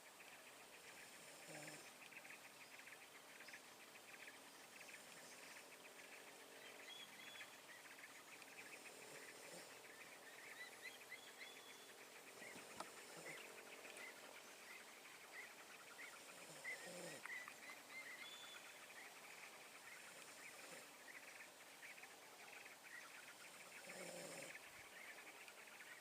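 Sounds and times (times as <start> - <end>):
faint insects trilling: 0.0 - 26.0
small birds chirping: 0.0 - 26.0.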